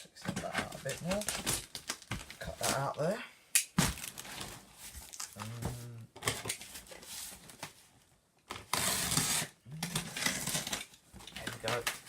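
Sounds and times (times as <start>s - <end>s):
cardboard ripping: 8.6s - 10.9s
blade scraping cardboard: 8.7s - 10.8s.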